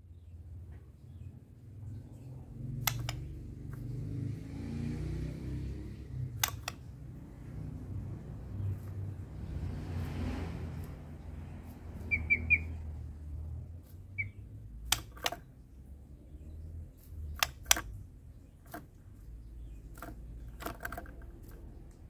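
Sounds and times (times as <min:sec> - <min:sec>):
low steady rumble: 0:00.0 - 0:22.0
sharp clicks: 0:02.7 - 0:04.0, 0:05.6 - 0:07.1, 0:13.8 - 0:15.7, 0:17.0 - 0:19.0
bird giving short high chirps: 0:12.0 - 0:12.8, 0:14.1 - 0:14.4.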